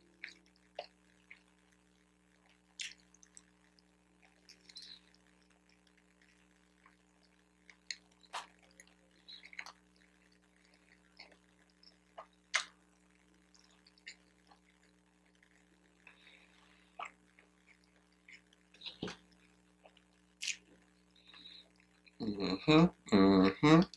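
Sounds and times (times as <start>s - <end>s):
wet chewing mouth sounds: 2.4s - 12.8s, 13.4s - 22.2s.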